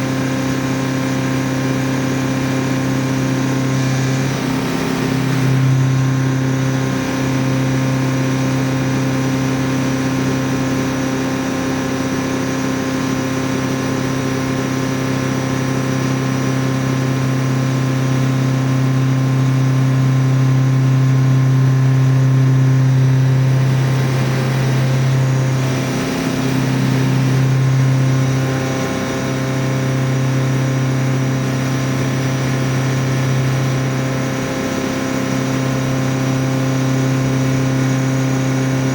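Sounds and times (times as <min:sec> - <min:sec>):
milling machine cutting steel: 0:03.3 - 0:06.7, 0:22.3 - 0:29.7.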